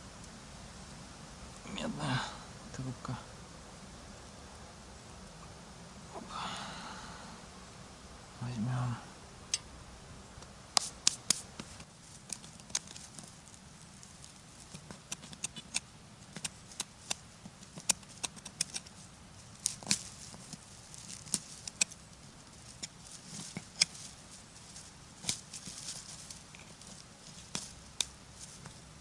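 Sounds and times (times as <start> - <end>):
dry forest litter crackling: 10.7 - 29.0.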